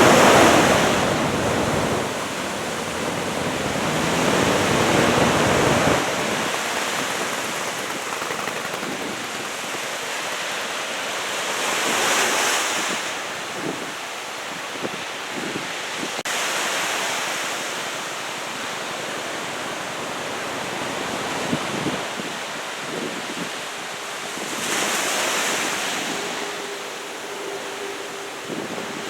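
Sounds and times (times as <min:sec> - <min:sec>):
wind buffeting microphone: 0:00.0 - 0:11.0
ocean surf breaking: 0:00.0 - 0:12.9, 0:23.6 - 0:29.0.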